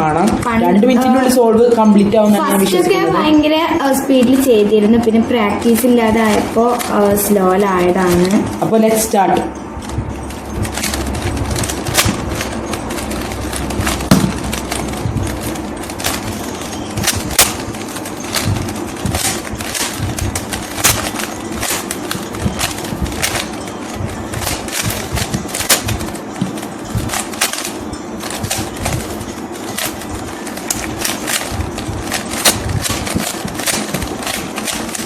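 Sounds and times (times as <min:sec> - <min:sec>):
puzzle cube turning clicks: 0:10.6 - 0:35.0.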